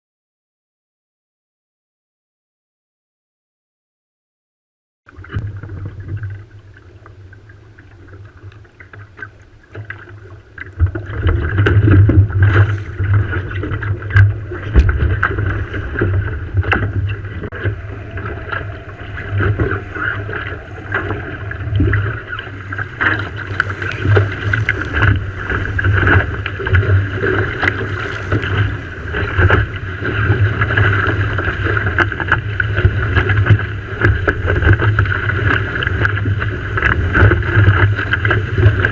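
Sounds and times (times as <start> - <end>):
water rushing along boat hull: 5.1 - 38.9
wind buffeting microphone: 10.2 - 38.9.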